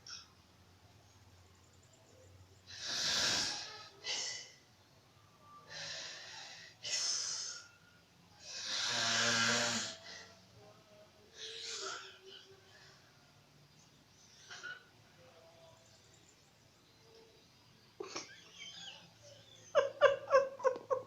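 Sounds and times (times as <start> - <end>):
woman snoring: 8.5 - 10.2.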